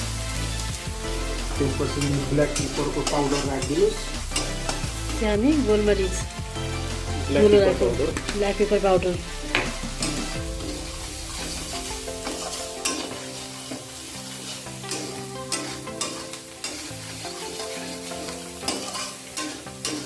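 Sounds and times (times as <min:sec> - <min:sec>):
food sizzling in oil: 0:00.0 - 0:20.0
spatula scraping a pan: 0:00.0 - 0:20.0.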